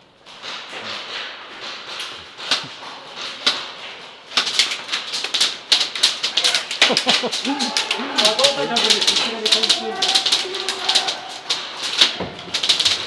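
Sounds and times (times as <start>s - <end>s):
bb impacts: 0.0s - 13.0s
airsoft guns firing: 0.4s - 13.0s.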